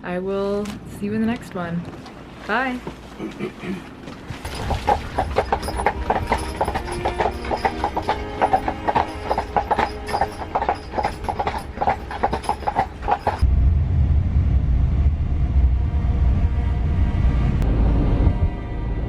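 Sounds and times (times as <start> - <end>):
horse hooves clip-clopping: 1.1 - 13.4
steady low rumble: 13.4 - 19.0.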